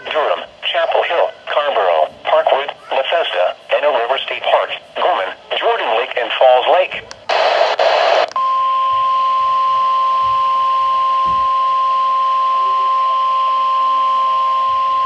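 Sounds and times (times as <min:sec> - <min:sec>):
radio hiss: 0:00.0 - 0:08.4
steady warning alarm tone: 0:07.4 - 0:15.0.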